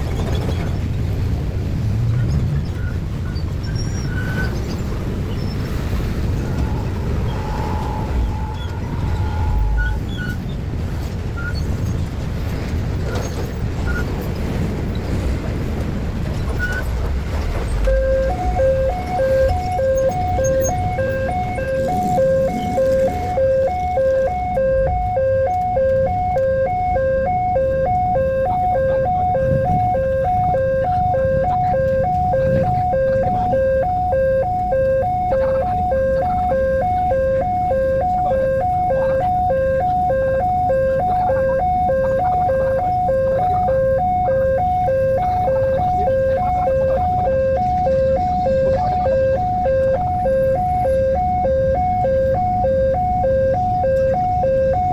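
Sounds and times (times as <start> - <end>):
road vehicles rumbling: 0.0 - 54.9
level crossing warning alarm: 4.1 - 10.4, 17.5 - 54.9.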